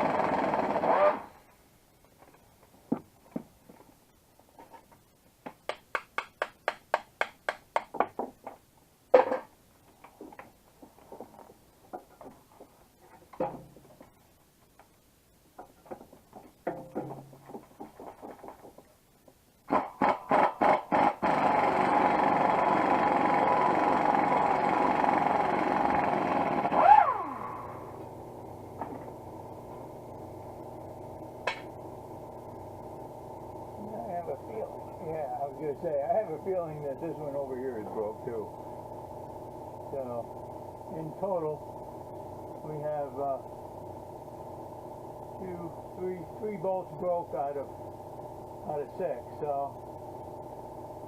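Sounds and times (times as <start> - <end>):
power tool running: 0.0 - 1.4, 19.7 - 35.6.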